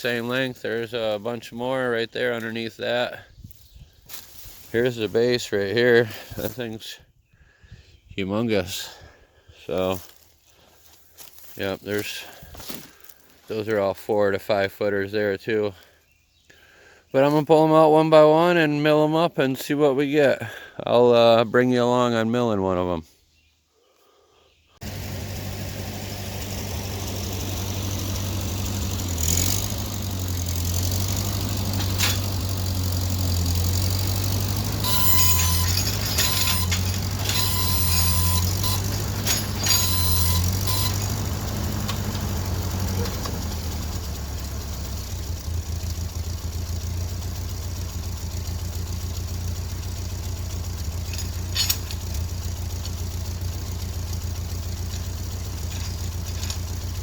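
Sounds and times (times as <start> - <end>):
tractor engine running: 0.0 - 6.9, 8.3 - 16.0, 24.8 - 57.0
metal clanks and squeaks: 28.7 - 45.1, 50.8 - 57.0.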